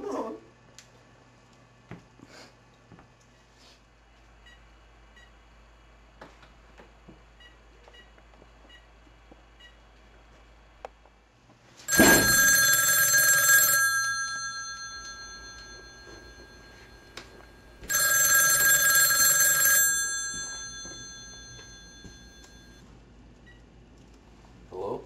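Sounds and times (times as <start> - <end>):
telephone bell ringing: 11.9 - 22.8.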